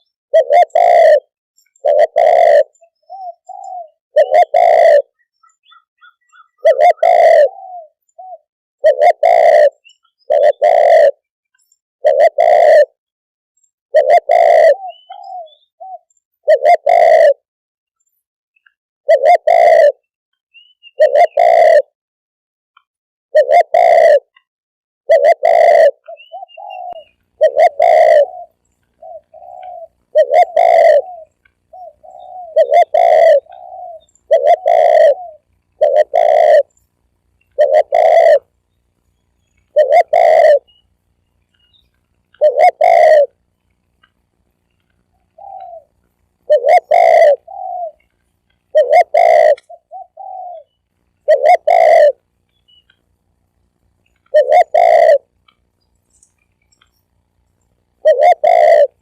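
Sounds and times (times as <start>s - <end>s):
dove cooing: 0.0s - 11.2s, 12.0s - 13.0s, 13.9s - 17.4s, 19.1s - 20.1s, 21.0s - 21.9s, 23.4s - 24.4s, 25.1s - 38.6s, 39.5s - 40.9s, 41.5s - 44.2s, 44.8s - 53.0s, 54.1s - 55.6s, 57.9s - 59.0s.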